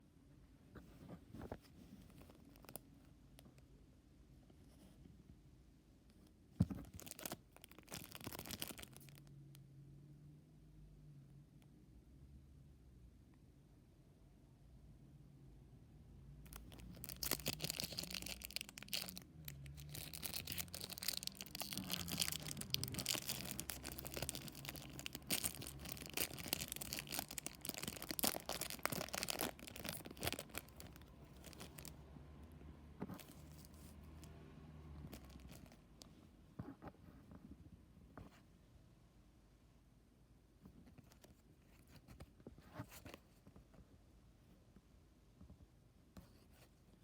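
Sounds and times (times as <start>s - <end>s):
wrapper tearing and crinkling: 7.0s - 9.2s, 16.5s - 31.9s.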